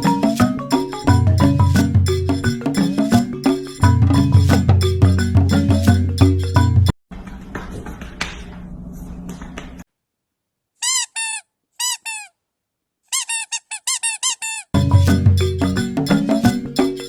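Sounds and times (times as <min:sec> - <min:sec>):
squeaky rubber toy squeaking: 0:10.8 - 0:12.4, 0:13.1 - 0:14.8.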